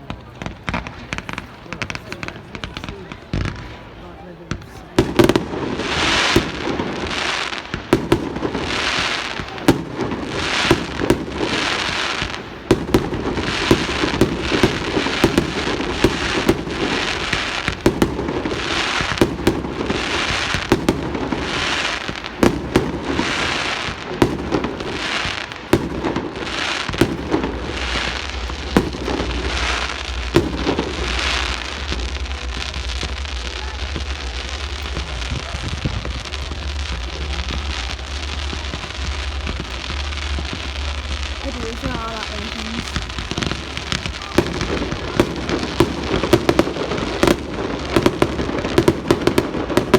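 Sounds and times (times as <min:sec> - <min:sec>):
fireworks bangs: 0:00.0 - 0:49.9
fireworks crackling: 0:00.0 - 0:49.9.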